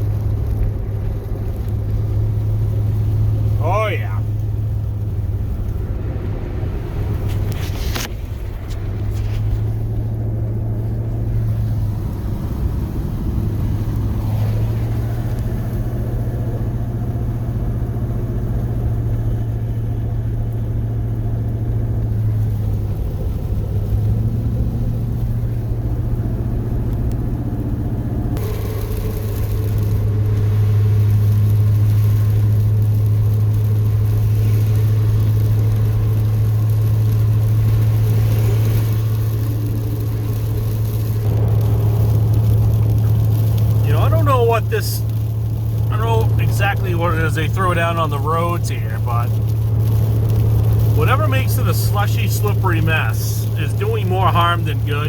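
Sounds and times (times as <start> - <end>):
engine drone inside cab: 0.0 - 55.0
road noise: 0.0 - 55.0
loud hiss: 50.4 - 55.0.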